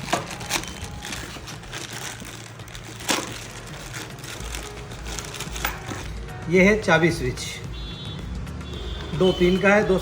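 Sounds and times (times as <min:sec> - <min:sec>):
packaging rustling and crinkling: 0:00.0 - 0:06.3.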